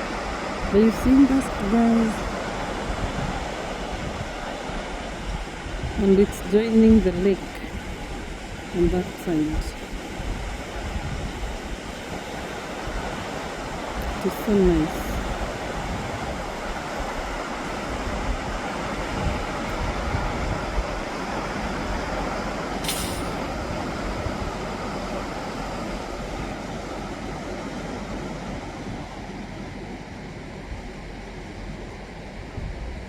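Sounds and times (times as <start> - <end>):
stream water rushing: 0.0 - 30.5
brief click: 22.8 - 23.4.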